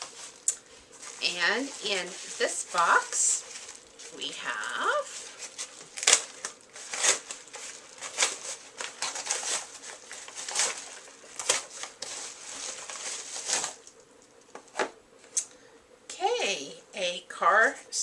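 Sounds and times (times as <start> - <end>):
packaging crinkling and rustling: 0.0 - 15.4.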